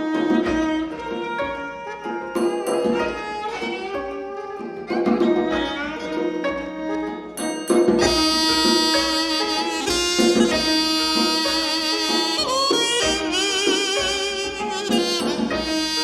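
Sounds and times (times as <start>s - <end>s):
instrumental melody: 0.0s - 16.0s.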